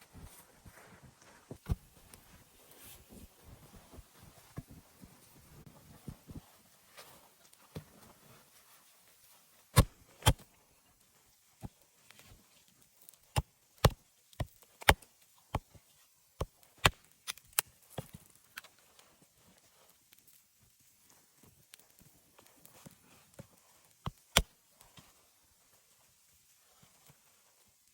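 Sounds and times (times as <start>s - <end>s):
wood chopping strikes: 9.8s - 10.4s.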